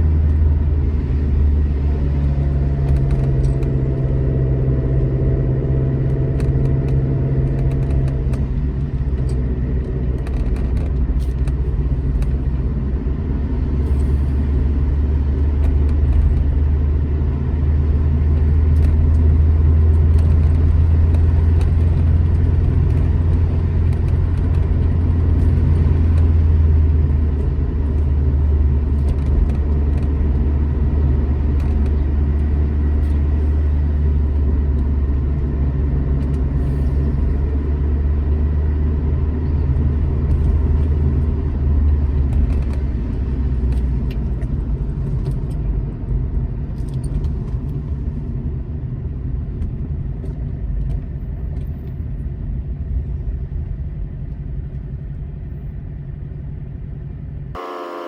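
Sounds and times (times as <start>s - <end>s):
car engine droning: 0.0s - 58.0s
road noise: 0.0s - 58.0s.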